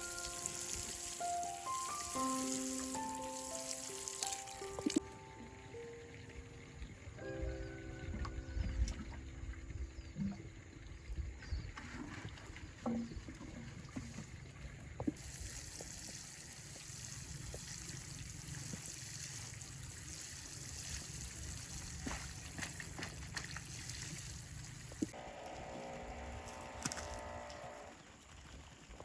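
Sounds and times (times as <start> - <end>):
soft chiming music: 0.0 - 10.2
running water trickling: 0.0 - 29.0.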